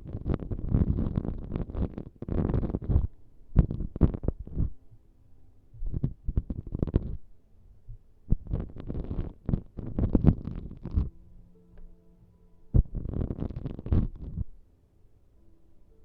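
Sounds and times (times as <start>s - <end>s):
scratching against microphone: 0.0s - 4.8s, 5.8s - 7.2s, 8.3s - 11.1s, 12.8s - 14.6s.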